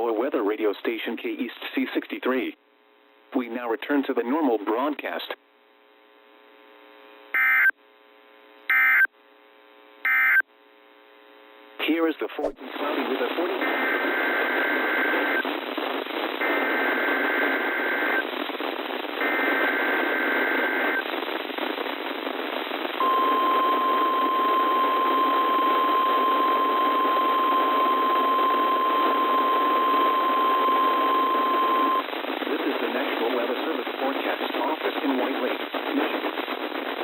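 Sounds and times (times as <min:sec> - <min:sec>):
radio static: 0:11.8 - 0:37.0
steady warning alarm tone: 0:23.0 - 0:32.0
warbling data tones: 0:23.0 - 0:32.0.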